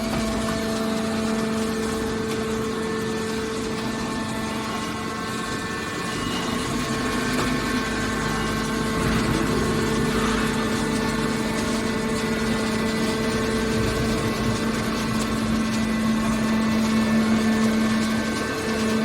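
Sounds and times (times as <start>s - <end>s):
baler motor and pump humming: 0.0s - 19.0s.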